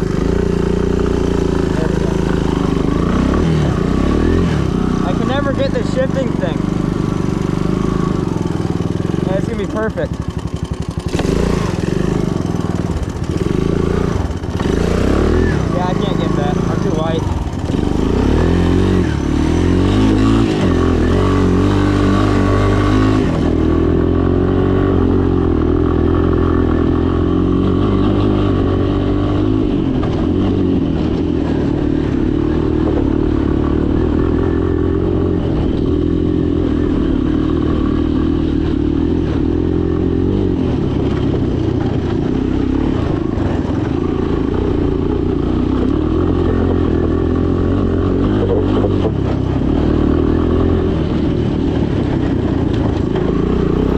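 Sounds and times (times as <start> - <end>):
small gasoline engine running: 0.0 - 29.5.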